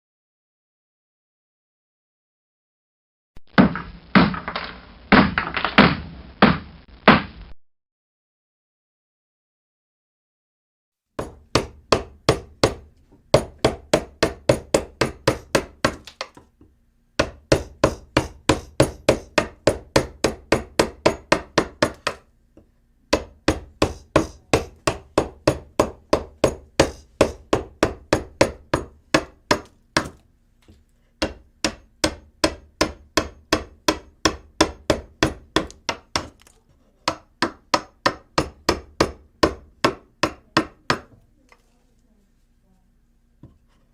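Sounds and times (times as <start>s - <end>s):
rapid hammering: 3.5s - 7.3s, 11.2s - 16.4s, 17.2s - 22.3s, 23.1s - 30.2s, 31.2s - 41.2s.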